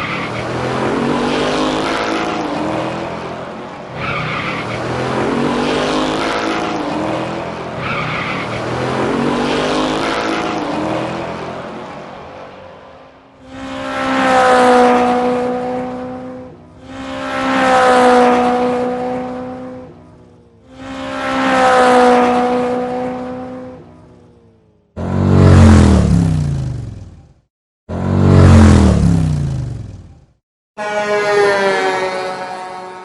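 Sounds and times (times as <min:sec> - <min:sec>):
vehicle engine passing by: 0:08.6 - 0:19.8, 0:25.0 - 0:27.0, 0:27.9 - 0:30.1.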